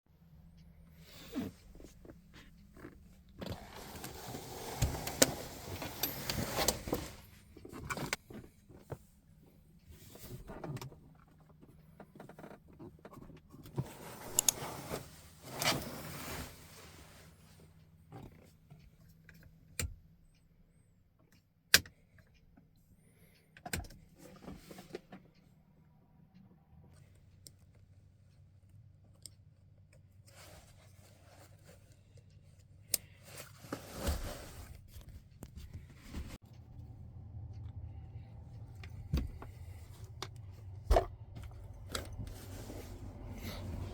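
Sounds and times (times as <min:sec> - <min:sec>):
rustling and shuffling: 0:00.5 - 0:18.8, 0:30.2 - 0:43.9
faint low hum: 0:34.8 - 0:43.9.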